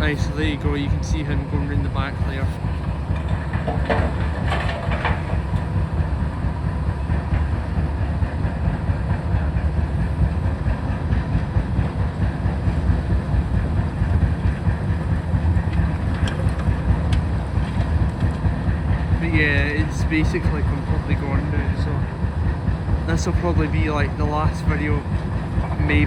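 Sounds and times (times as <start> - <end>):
heavy machinery rumbling: 0.0 - 26.0
metallic clanks: 3.1 - 5.4.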